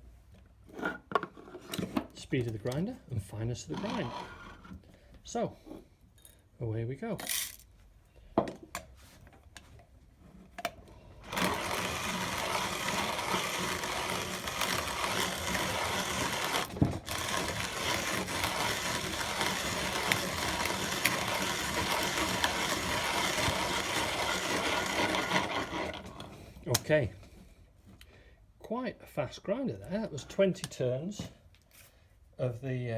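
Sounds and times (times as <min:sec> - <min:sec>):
manual coffee grinder grinding: 0:03.6 - 0:04.6, 0:10.6 - 0:26.9
grinder clicks: 0:10.6 - 0:26.9.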